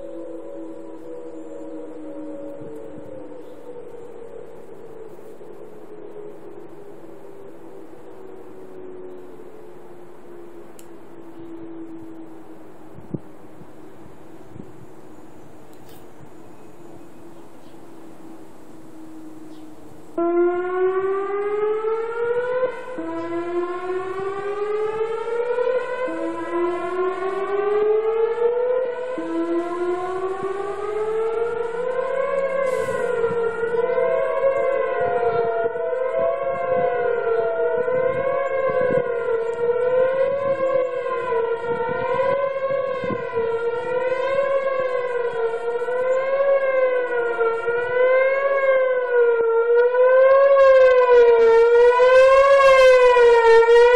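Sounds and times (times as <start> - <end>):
outdoor warning siren: 0.0 - 53.9.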